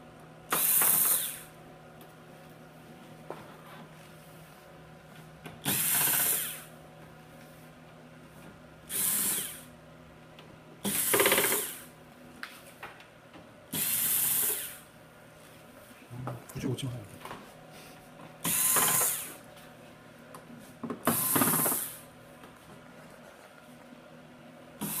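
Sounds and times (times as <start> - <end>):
cordless screwdriver running: 18.5 - 19.3.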